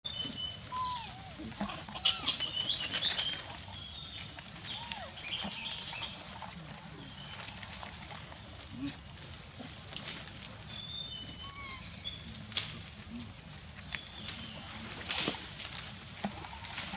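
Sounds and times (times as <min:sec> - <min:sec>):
lower arched calls: 0:00.1 - 0:02.5
rustling and crackling: 0:00.1 - 0:11.3, 0:12.1 - 0:16.9.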